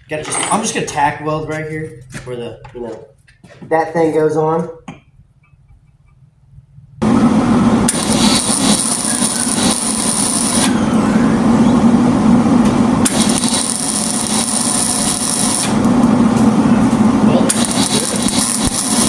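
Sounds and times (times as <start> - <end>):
arc welding crackle: 7.0 - 11.1, 12.5 - 19.0.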